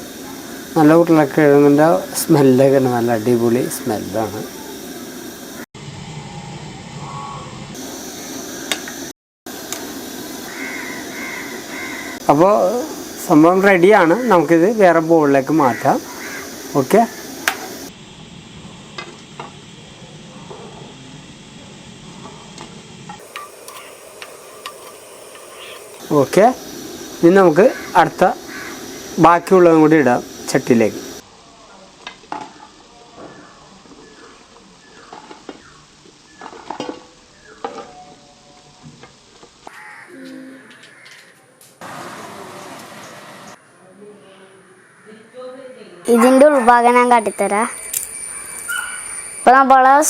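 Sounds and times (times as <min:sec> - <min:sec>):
oil sizzling in a frying pan: 0:00.0 - 0:05.6, 0:08.1 - 0:20.0, 0:21.7 - 0:31.2.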